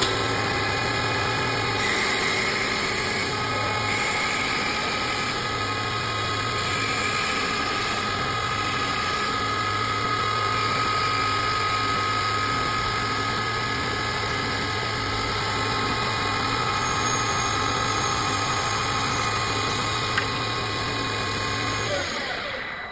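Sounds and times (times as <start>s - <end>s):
lathe motor hum and whine: 0.0s - 22.9s.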